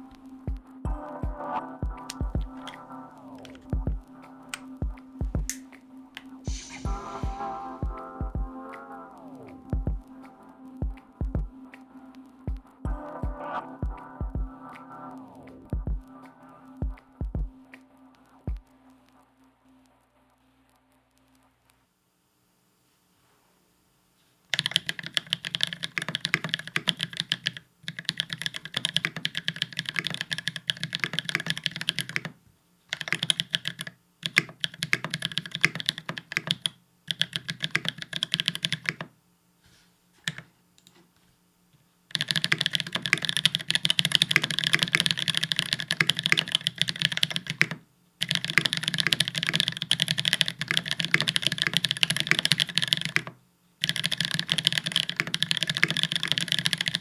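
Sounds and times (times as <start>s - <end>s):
fast mechanical keyboard typing: 24.5s - 39.1s, 42.1s - 57.0s.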